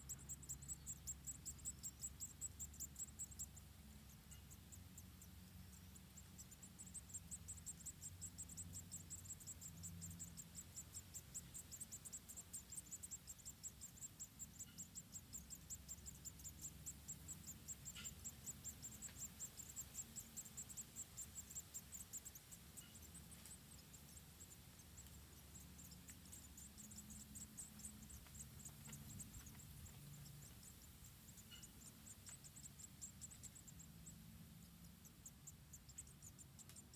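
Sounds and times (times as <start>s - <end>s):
insect chirping: 0.0s - 36.9s
low background hum: 0.0s - 36.9s
faint clicks: 35.9s - 36.9s.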